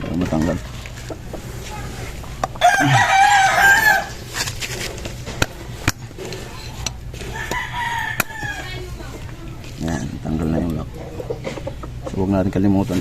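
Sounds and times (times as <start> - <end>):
rooster crowing: 2.6 - 4.3, 7.2 - 8.9.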